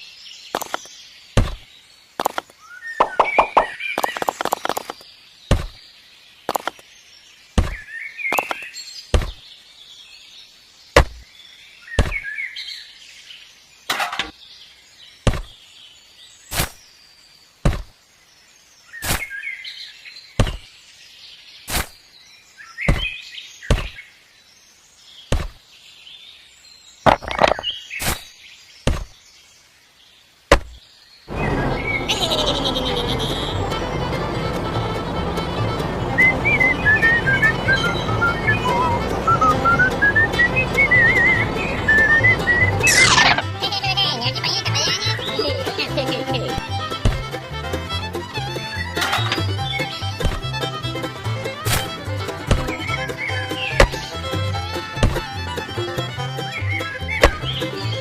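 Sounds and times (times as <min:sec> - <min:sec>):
birds chirping: 0:00.0 - 0:58.0
chopping strikes: 0:00.6 - 0:05.8, 0:07.6 - 0:09.4, 0:11.0 - 0:11.2, 0:12.0 - 0:12.3, 0:15.2 - 0:15.6, 0:16.5 - 0:16.8, 0:17.6 - 0:17.9, 0:20.4 - 0:20.7, 0:21.7 - 0:22.0, 0:22.9 - 0:24.0, 0:25.3 - 0:25.6, 0:28.9 - 0:29.2, 0:30.5 - 0:30.8, 0:46.9 - 0:47.4, 0:50.2 - 0:50.6, 0:51.6 - 0:53.0, 0:53.6 - 0:54.2, 0:55.0 - 0:55.4, 0:57.2 - 0:57.6.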